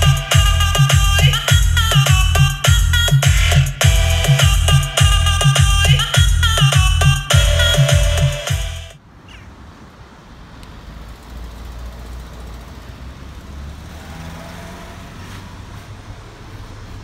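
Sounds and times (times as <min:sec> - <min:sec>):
background music: 0:00.0 - 0:09.0.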